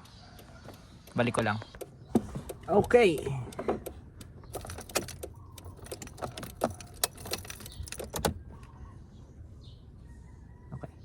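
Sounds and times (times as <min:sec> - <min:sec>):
tools and parts clicking and knocking: 0:01.8 - 0:08.4.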